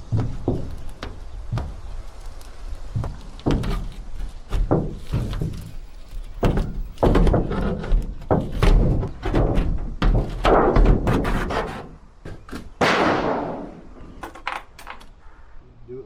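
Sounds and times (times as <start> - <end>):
knocks and thuds: 0.0 - 14.6
scraping: 0.0 - 15.2.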